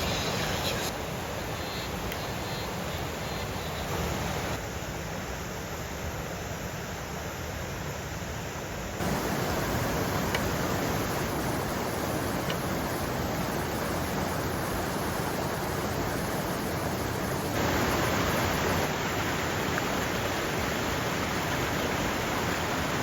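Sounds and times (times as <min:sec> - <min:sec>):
waterfall rushing: 0:09.0 - 0:23.0.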